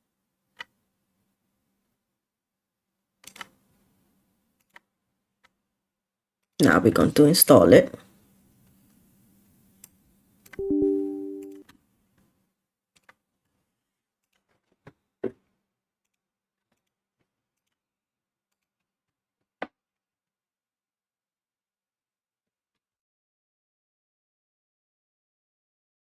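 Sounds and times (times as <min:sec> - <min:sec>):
computer notification chime: 0:10.6 - 0:11.6.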